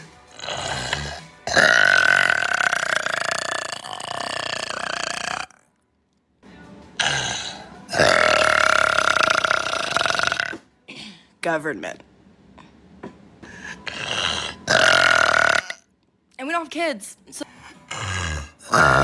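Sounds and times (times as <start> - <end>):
long burps: 0.4 - 5.7, 7.0 - 10.6, 13.8 - 15.9, 17.9 - 19.0.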